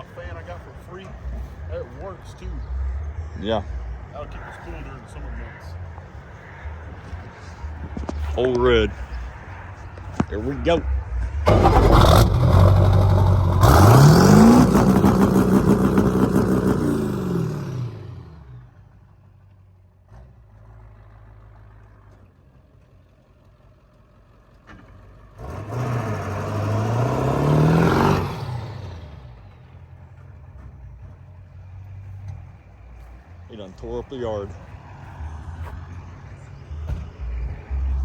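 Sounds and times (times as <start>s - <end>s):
engine revving hard: 11.5s - 18.6s, 25.4s - 29.3s.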